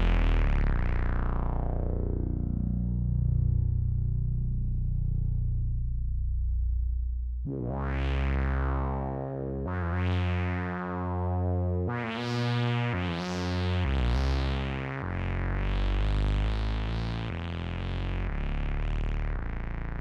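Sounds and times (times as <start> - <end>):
deep bass note: 0.0 - 9.6.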